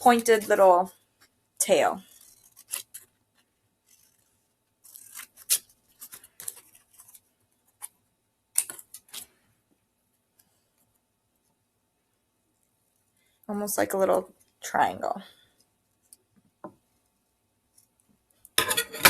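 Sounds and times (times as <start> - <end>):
scissors cutting paper: 2.0 - 3.1, 3.8 - 7.9.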